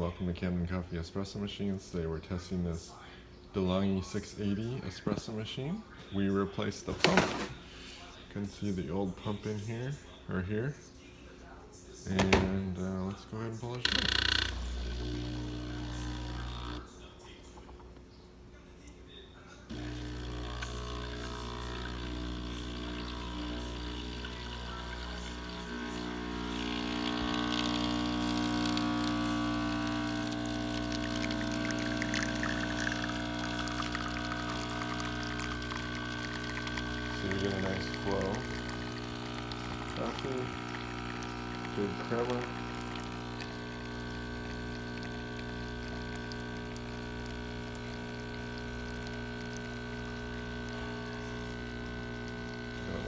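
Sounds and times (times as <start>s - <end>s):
espresso machine pump humming: 6.9s - 7.6s, 13.8s - 16.9s, 19.7s - 53.0s.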